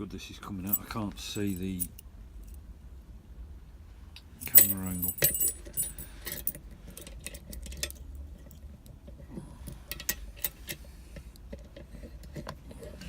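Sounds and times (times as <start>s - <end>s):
low steady hum: 0.0s - 13.0s
keys jingling on padlock: 0.7s - 2.0s, 4.4s - 6.6s.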